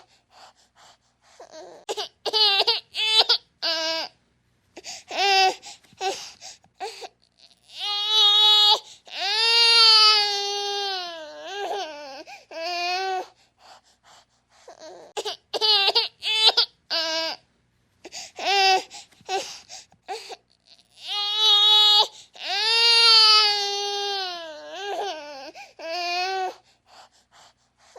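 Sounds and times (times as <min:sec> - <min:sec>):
baby crying: 0:01.4 - 0:04.1, 0:06.8 - 0:13.3, 0:14.7 - 0:17.4, 0:18.4 - 0:19.5, 0:20.1 - 0:26.6.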